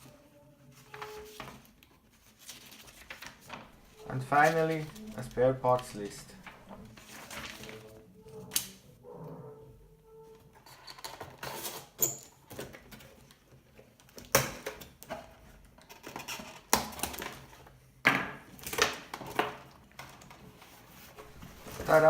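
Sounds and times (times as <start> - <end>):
packaging rustling and clicking: 21.1 - 22.0.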